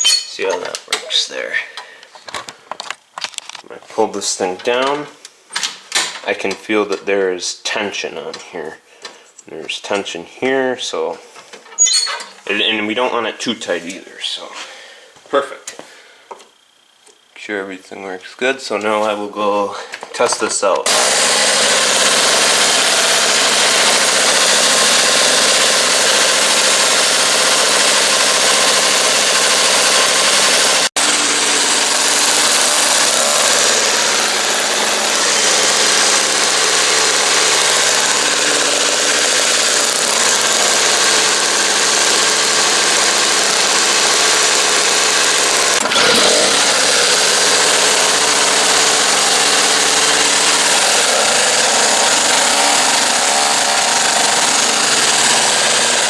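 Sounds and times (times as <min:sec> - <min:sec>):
snowblower engine running: 0:20.9 - 0:56.0.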